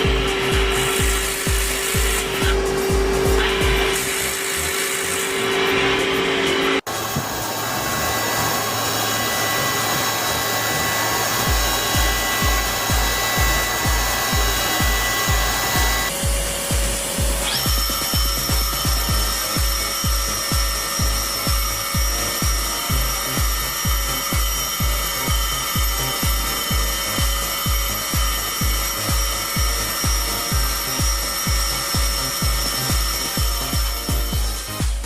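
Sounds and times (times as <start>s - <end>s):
electronic dance music: 0.0s - 6.9s, 10.7s - 35.0s
grinding machine whining: 0.0s - 35.0s.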